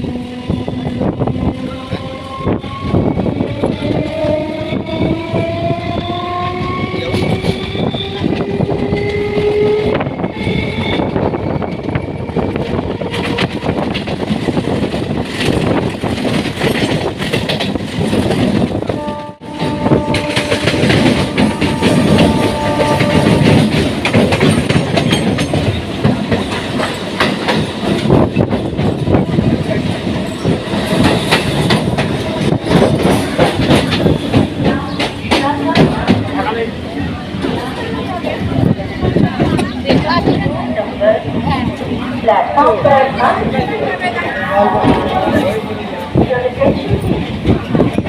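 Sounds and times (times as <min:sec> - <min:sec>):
train wheels clattering on rails: 0:00.0 - 0:48.0.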